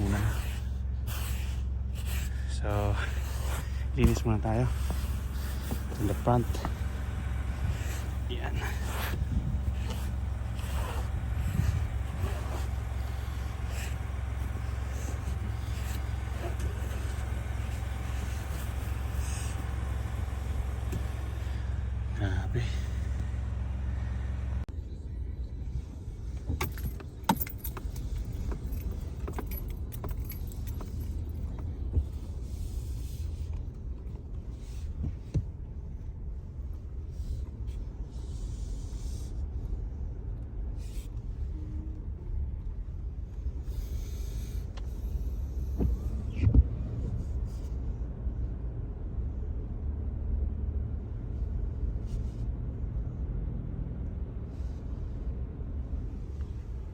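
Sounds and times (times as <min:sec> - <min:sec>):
snow brushed and scraped off car: 0:00.0 - 0:23.8
car engine idling: 0:00.0 - 0:52.4.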